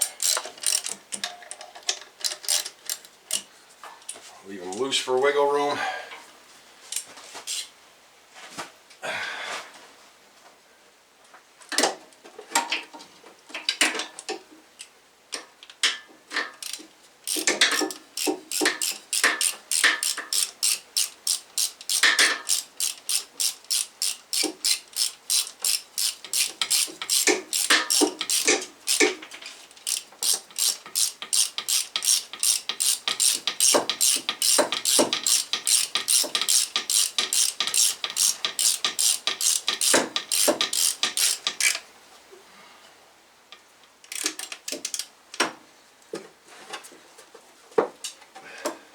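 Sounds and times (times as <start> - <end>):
ratchet wrench clicking: 0.0 - 1.6, 2.2 - 3.5, 7.5 - 7.7, 16.6 - 29.2, 29.8 - 41.8, 44.1 - 45.1.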